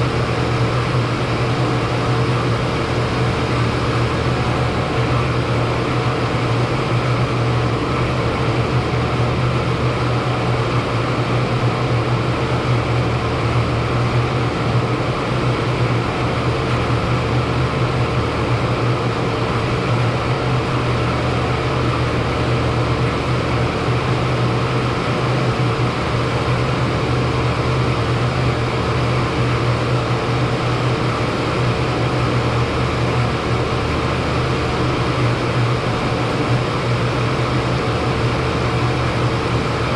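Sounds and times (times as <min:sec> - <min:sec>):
rooftop hvac unit humming: 0:00.0 - 0:39.9.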